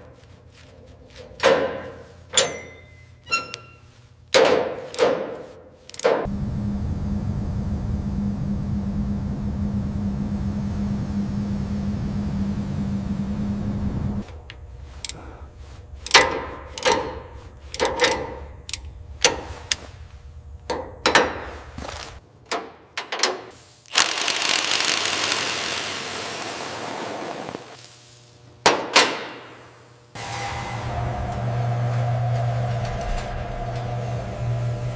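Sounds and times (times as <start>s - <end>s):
sharp knocks and clicks: 16.0s - 19.8s
steady hiss: 25.3s - 28.4s.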